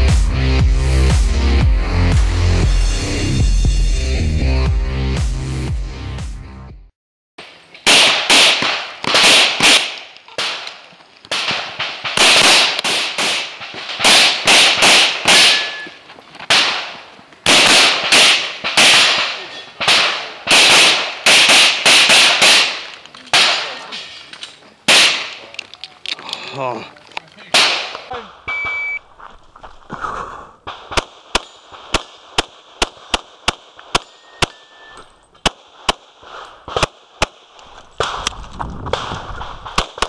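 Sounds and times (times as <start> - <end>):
pistol shots: 7.4 - 23.9, 24.9 - 25.4, 27.5 - 28.9, 30.7 - 38.3.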